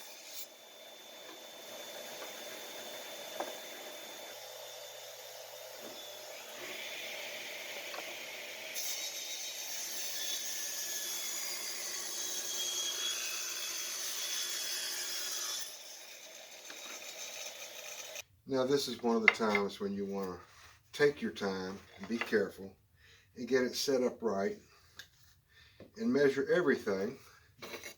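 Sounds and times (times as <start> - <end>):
power saw cutting wood: 0.0 - 18.2.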